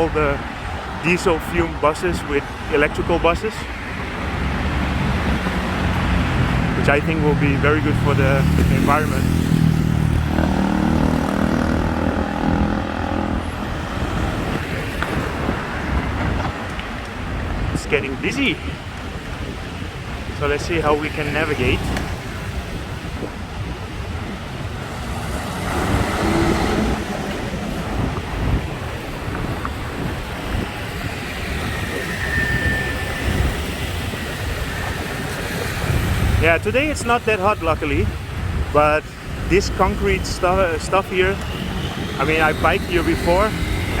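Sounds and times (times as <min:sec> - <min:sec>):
passing traffic rumble: 0:00.0 - 0:44.0
wind buffeting microphone: 0:00.0 - 0:44.0
faint high whine: 0:31.7 - 0:35.1
heavy vehicle engine: 0:39.8 - 0:44.0.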